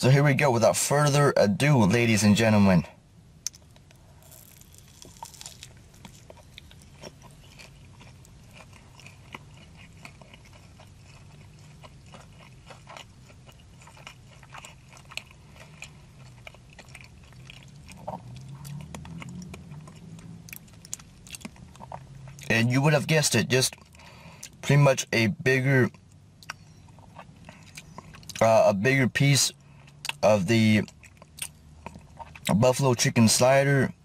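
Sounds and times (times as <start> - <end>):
wet chewing close to microphone: 4.3 - 22.5, 30.8 - 32.5.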